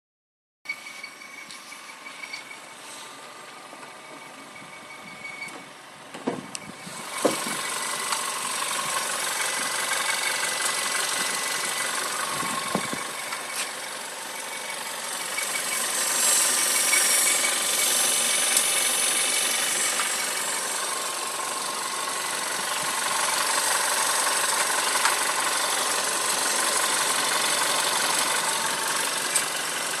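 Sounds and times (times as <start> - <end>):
thin high squeak: 0.7 - 8.1, 11.8 - 20.8
car engine and road noise: 0.7 - 30.0.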